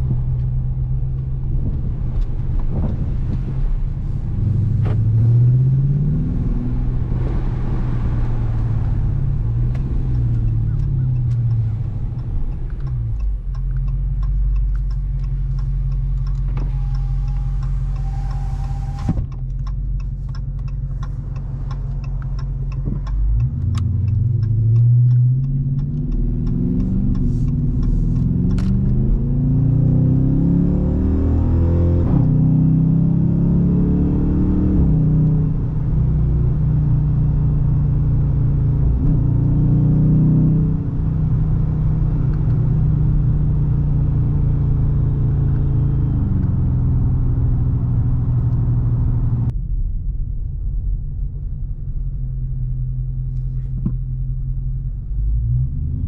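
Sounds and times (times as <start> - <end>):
car engine accelerating: 0.0 - 56.0
faint regular ticking: 10.1 - 18.4, 19.3 - 28.3.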